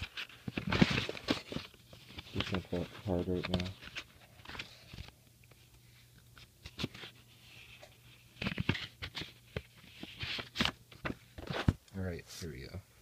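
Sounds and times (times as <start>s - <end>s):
packaging crackling and rustling: 0.0s - 5.2s.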